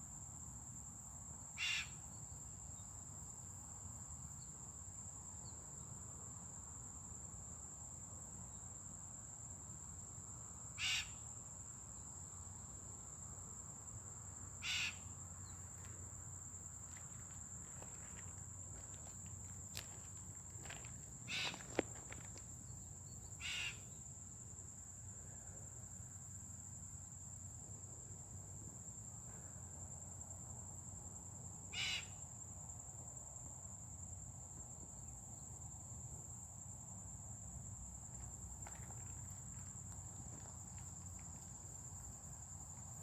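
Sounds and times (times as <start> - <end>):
high-pitched insect trill: 0.0 - 43.0.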